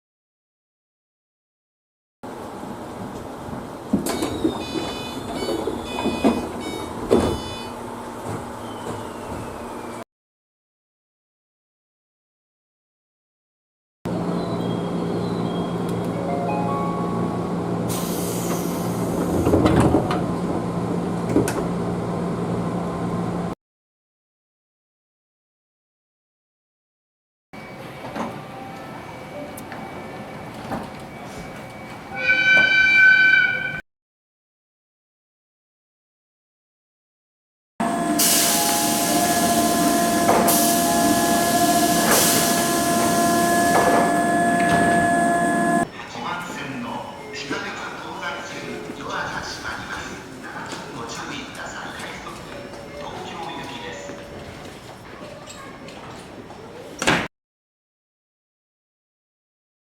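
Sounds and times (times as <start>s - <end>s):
train car hum: 2.3s - 10.0s, 14.1s - 23.5s, 37.8s - 45.9s
train door signal: 4.0s - 7.8s, 37.8s - 45.9s
steady tones: 37.8s - 45.8s
air hiss: 38.1s - 45.8s.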